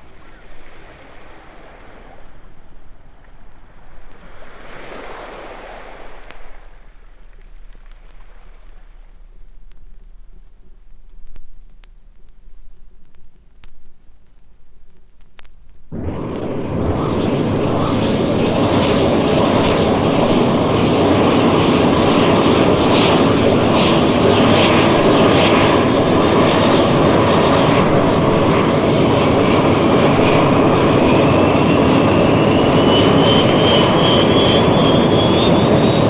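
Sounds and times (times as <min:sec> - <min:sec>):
jet engines roaring: 0:00.0 - 0:10.8, 0:15.8 - 0:36.0
thin whine rising in pitch: 0:08.2 - 0:36.0.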